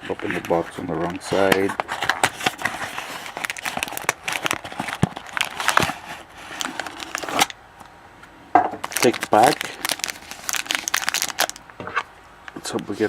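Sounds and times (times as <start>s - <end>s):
cardboard packaging crinkling and tearing: 0.0s - 7.6s, 8.8s - 11.6s.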